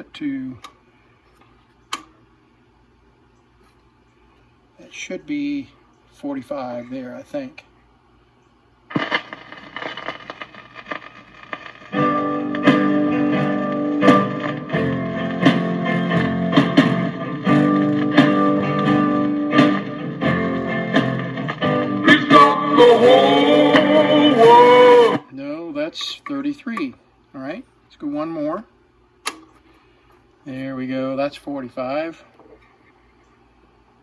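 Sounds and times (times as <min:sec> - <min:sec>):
slowed guitar and singing record: 0:08.9 - 0:25.3.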